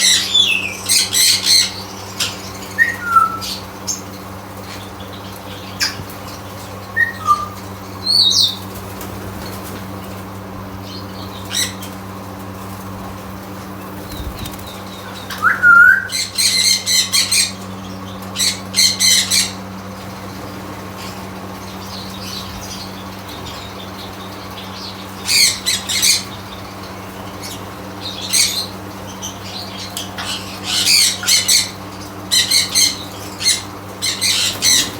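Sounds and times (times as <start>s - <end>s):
parrots squawking: 0.0s - 4.0s, 15.1s - 19.7s, 25.2s - 26.4s, 27.4s - 34.9s
steady low hum: 0.0s - 34.9s.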